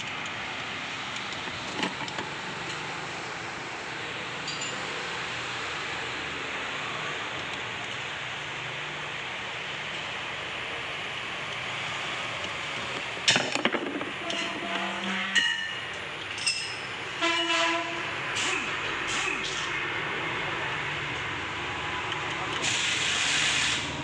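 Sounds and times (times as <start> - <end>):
metal tools clinking together: 4.4 - 4.9, 15.4 - 16.9.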